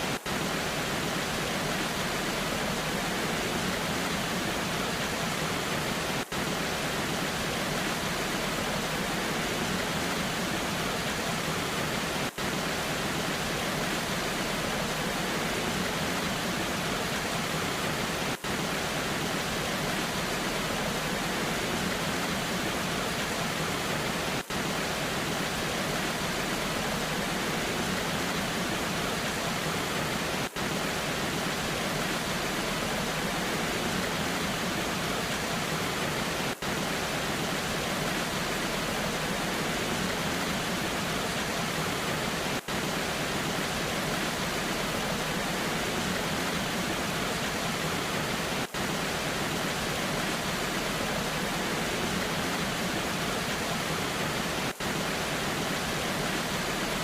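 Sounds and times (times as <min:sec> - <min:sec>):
waterfall rushing: 0:00.0 - 0:57.0.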